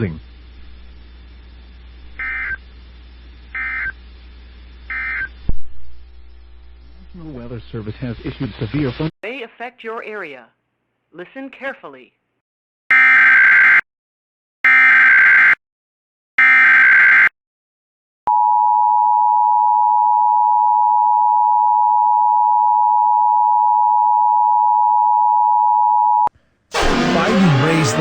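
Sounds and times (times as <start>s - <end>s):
digital data bursts: 26.8s - 28.0s.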